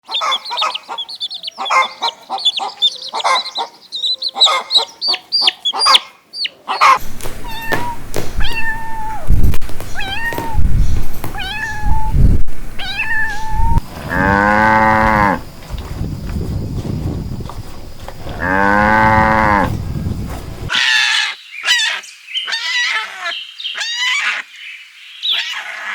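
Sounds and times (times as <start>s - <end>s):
rapid high-pitched chirping: 0.1s - 13.8s
kitten meowing: 6.8s - 13.8s
cow mooing: 13.2s - 15.5s, 18.2s - 19.8s.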